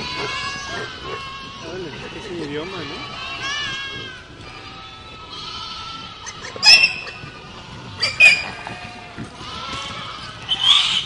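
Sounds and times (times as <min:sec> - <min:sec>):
goats bleating: 0:00.0 - 0:11.0.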